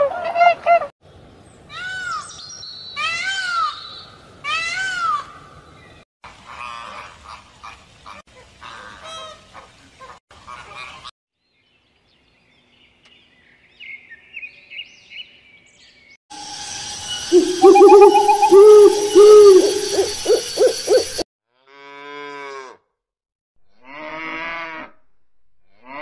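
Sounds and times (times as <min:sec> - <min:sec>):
faint high chirping: 0:16.8 - 0:21.2
mixed bird calls: 0:17.2 - 0:21.2.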